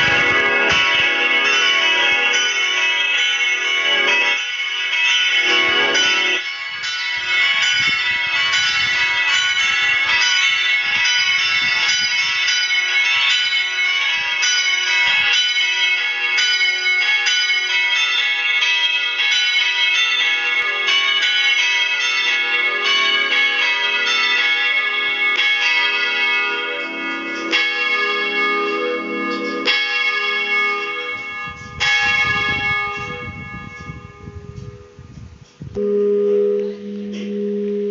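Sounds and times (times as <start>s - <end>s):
church bells pealing: 0.0s - 37.9s.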